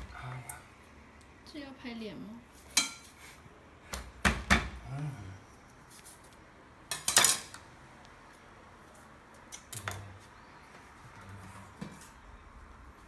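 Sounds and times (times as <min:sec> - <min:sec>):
kitchen utensils clattering: 0:06.9 - 0:07.6.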